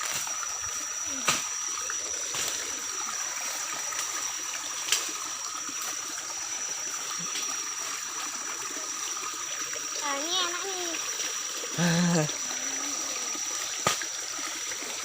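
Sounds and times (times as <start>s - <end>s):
high-pitched whine: 0.0s - 10.0s.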